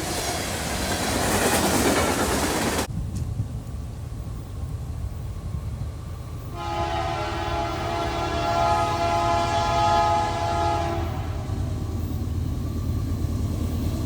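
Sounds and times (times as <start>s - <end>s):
train rumbling on rails: 0.0s - 14.0s
locomotive air horn blast: 6.5s - 11.6s.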